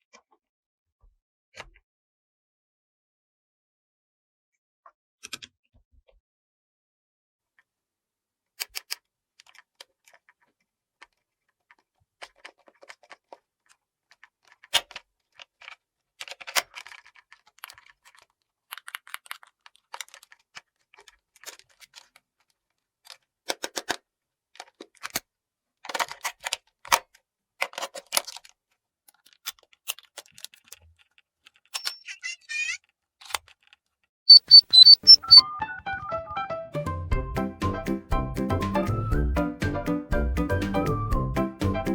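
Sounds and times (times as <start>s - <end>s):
plastic toy pieces clicking: 8.6s - 10.2s, 11.0s - 22.2s, 23.0s - 24.0s, 24.6s - 35.1s
brief high-pitched tone: 34.3s - 36.5s.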